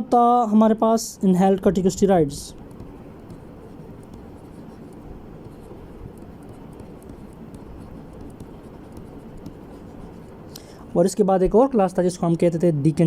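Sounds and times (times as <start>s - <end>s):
low background noise: 0.0s - 13.0s
pen scratching on paper: 2.5s - 10.5s.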